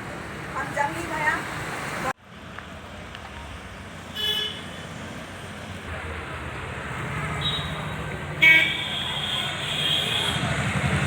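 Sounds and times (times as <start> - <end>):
vehicle engines in traffic: 0.0 - 11.0.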